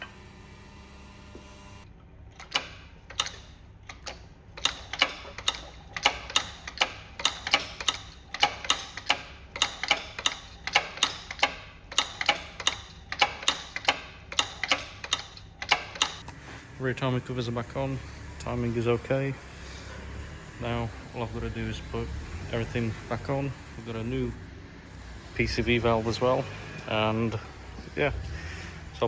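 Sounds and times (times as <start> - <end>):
ratchet wrench clicking: 2.3 - 16.3.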